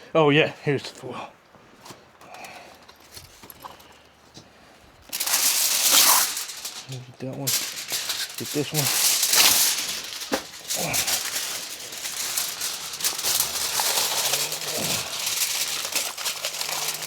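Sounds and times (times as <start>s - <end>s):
aluminium foil crinkling: 5.0s - 17.0s.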